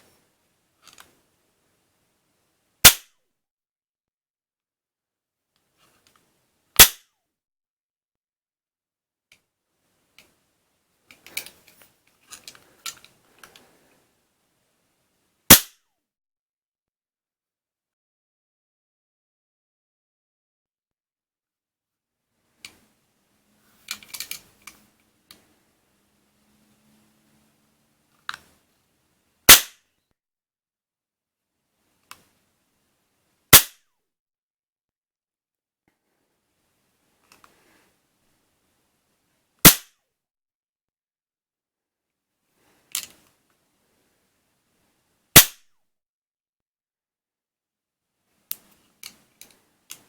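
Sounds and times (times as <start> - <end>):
cap gun shot: 2.9 - 3.1, 6.8 - 7.0, 15.5 - 15.8, 29.5 - 29.8, 33.5 - 33.8, 39.6 - 39.9, 45.4 - 45.6
cap gun click: 45.4 - 45.6.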